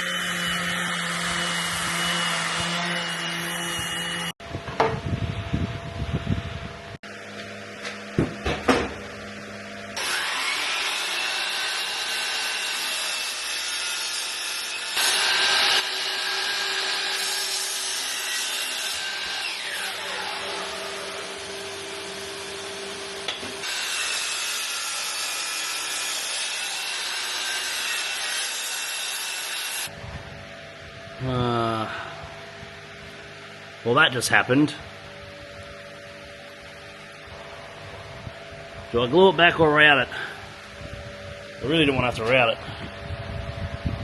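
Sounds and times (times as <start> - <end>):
power tool cutting wood: 0.0 - 4.4, 9.9 - 29.9.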